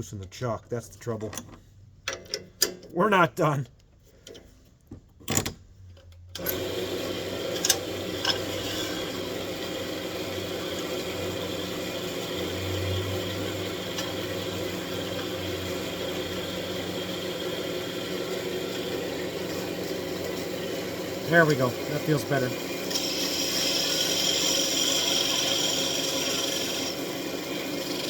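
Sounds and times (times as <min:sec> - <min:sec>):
wood lathe motor humming: 0:06.4 - 0:28.0.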